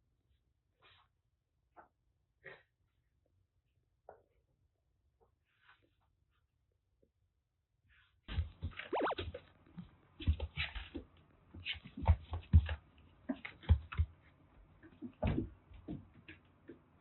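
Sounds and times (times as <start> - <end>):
kittens thumping and scuffling: 8.3 - 17.0.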